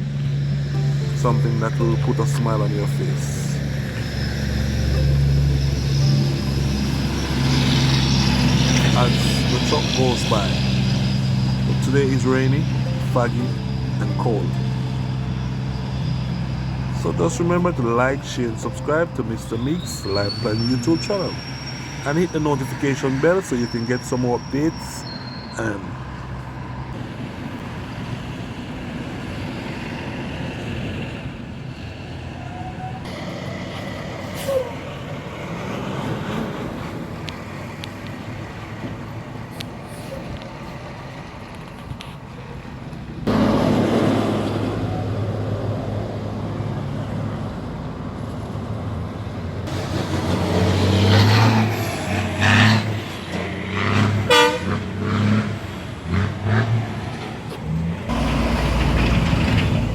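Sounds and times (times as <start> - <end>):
heavy truck engine: 0.0 - 59.9
road traffic passing: 0.0 - 59.9
car horn toots: 54.2 - 54.8.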